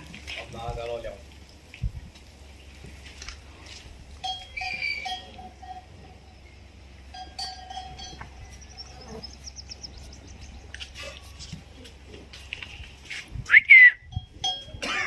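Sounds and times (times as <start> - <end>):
livestock bell ringing: 4.2 - 9.9, 14.1 - 15.0.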